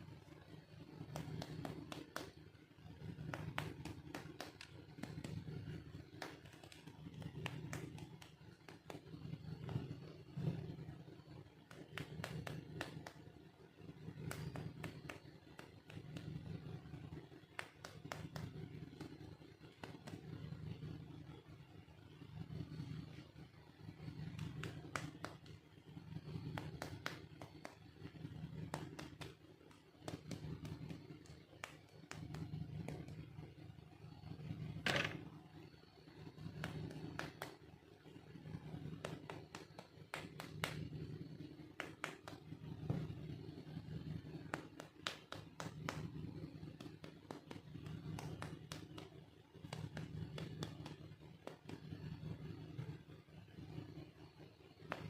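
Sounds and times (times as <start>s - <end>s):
low hum: 0.0s - 55.0s.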